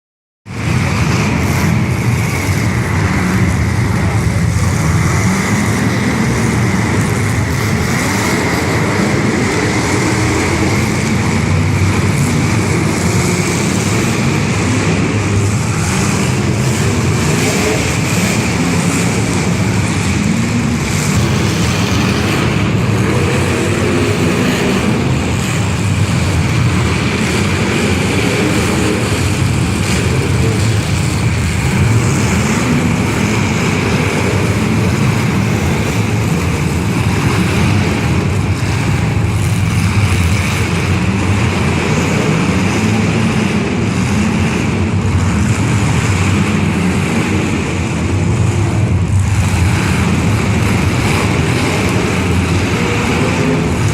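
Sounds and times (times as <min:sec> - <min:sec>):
car engines revving: 0:00.5 - 0:53.9.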